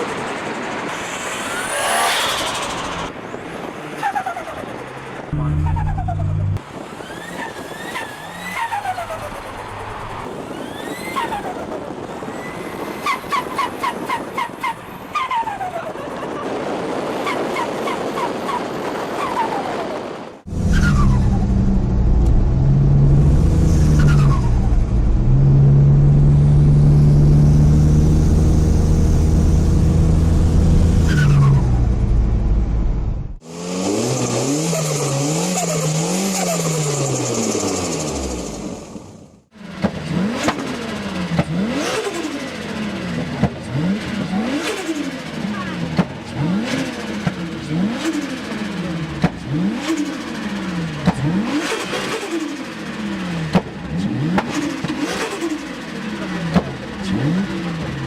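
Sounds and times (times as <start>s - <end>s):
car engine revving: 5.3s - 10.8s, 20.5s - 58.0s.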